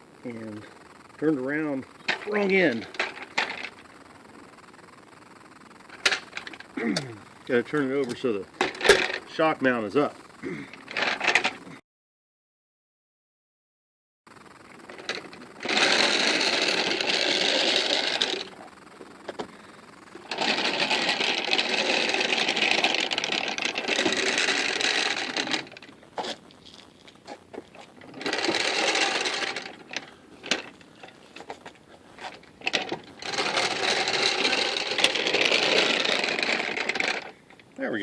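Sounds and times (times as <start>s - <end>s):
dolly wheels rolling and rattling: 8.1s - 9.4s, 14.9s - 19.5s, 20.2s - 37.4s.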